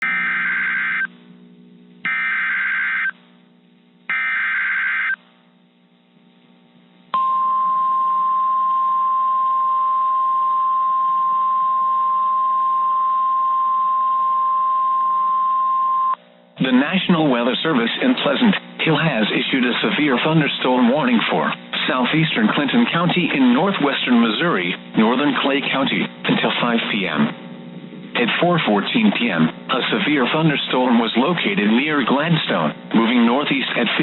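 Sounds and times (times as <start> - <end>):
steady alarm tone: 0.0 - 1.1, 2.1 - 3.2, 4.1 - 5.2
shrill data tone bursts: 2.1 - 3.2, 4.1 - 5.2.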